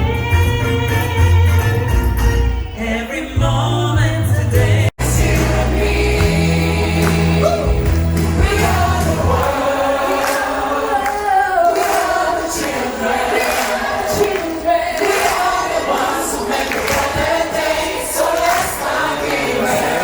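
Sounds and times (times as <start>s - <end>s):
choir-like singing: 0.0s - 20.0s
heavy bass line: 3.4s - 9.6s.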